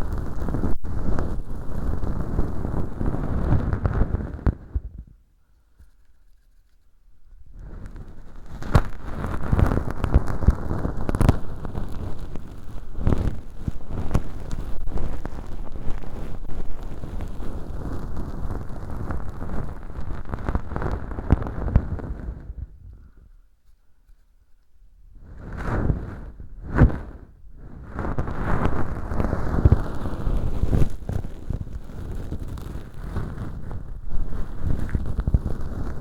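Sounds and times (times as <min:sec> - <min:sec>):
scratchy rustle in ear canal: 0:05.7 - 0:22.6, 0:25.2 - 0:36.0.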